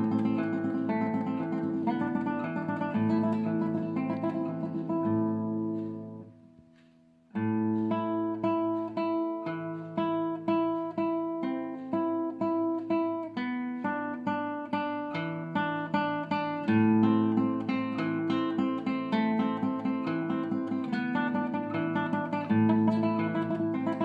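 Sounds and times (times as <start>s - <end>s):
acoustic guitar picked notes: 0.0s - 24.0s.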